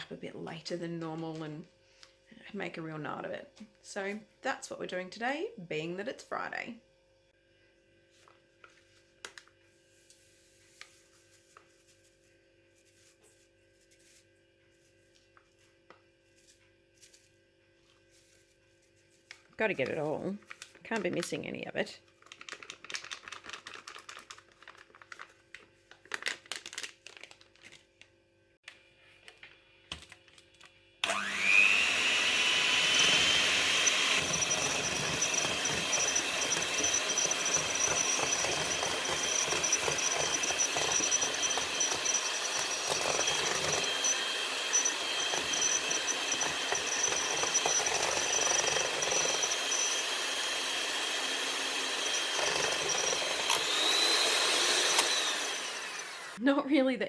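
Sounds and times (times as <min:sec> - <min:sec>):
electric mixer whirring: 0:31.0 - 0:56.4.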